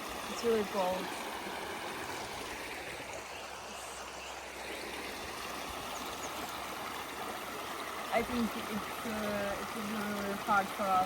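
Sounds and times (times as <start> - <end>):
stream rushing over rocks: 0.0 - 11.0.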